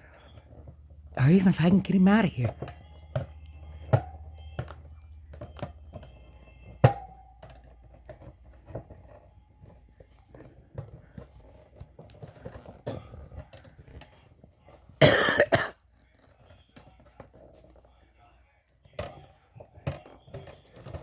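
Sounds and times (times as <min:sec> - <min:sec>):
pet carrier clicks and knocks: 0:02.5 - 0:14.9, 0:18.9 - 0:21.0.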